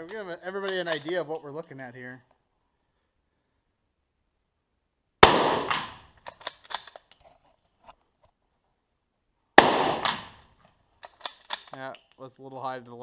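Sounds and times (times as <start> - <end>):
small clicks and knocks: 0.0 - 1.5, 5.7 - 8.4, 10.0 - 12.6
handgun shot echoing: 5.2 - 6.1, 9.6 - 10.4.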